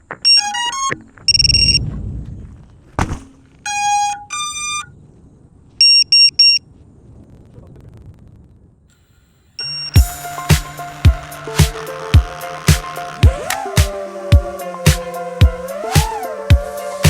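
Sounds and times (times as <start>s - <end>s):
electronic beeps: 0.0s - 1.8s, 3.7s - 5.0s, 5.8s - 6.6s, 9.6s - 10.2s.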